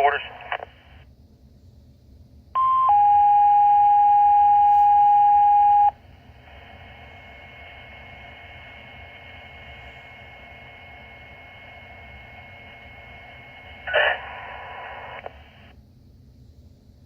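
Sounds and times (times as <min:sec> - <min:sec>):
radio hiss: 0:00.0 - 0:01.1, 0:06.2 - 0:15.8.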